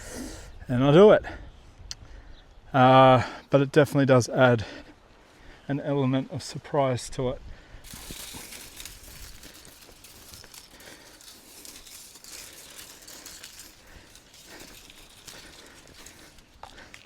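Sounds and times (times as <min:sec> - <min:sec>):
fence wire rustling and clicking: 0:07.8 - 0:17.0.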